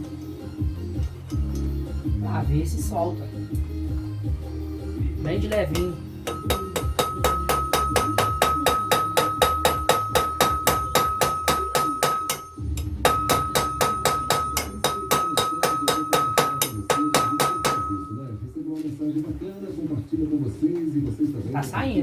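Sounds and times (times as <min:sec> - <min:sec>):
hammer tapping on metal gear: 0:05.4 - 0:18.4.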